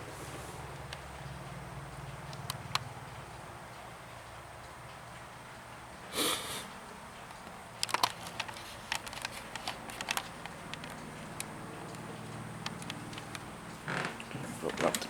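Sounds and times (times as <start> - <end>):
light clicks and taps: 0.8 - 6.0, 6.8 - 15.0
short sniff: 6.1 - 6.7.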